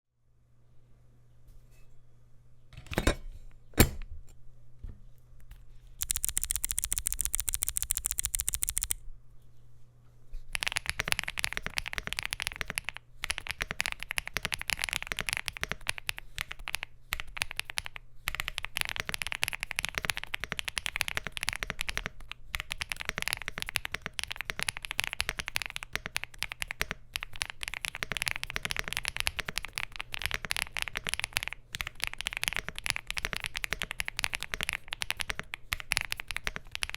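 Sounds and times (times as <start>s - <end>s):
mechanical keyboard typing: 6.0s - 9.0s, 10.5s - 36.9s
sharp clicks: 6.0s - 9.0s.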